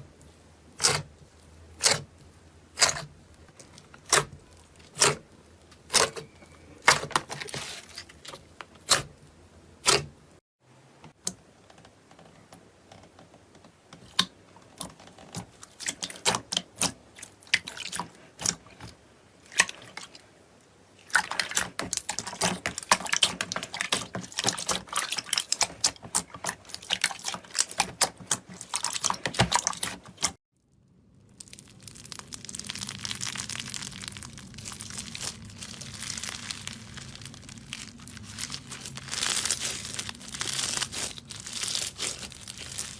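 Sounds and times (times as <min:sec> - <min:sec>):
crinkly squishing: 0:00.8 - 0:09.1, 0:21.0 - 0:42.9.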